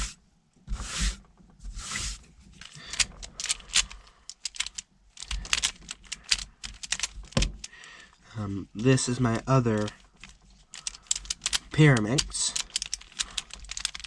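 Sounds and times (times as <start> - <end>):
plastic puzzle clicking: 2.6 - 7.9, 9.7 - 14.0.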